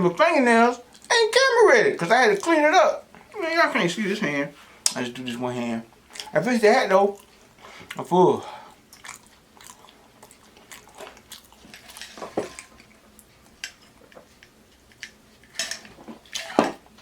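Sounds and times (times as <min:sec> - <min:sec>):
chewing mouth clicks: 0:08.9 - 0:12.0.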